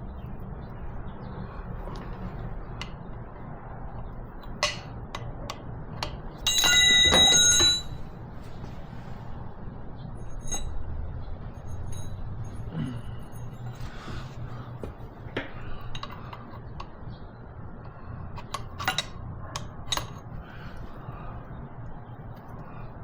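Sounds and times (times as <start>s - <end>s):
steady low hum: 0.0s - 23.0s
ringing metal clang: 6.5s - 8.1s, 10.2s - 10.8s.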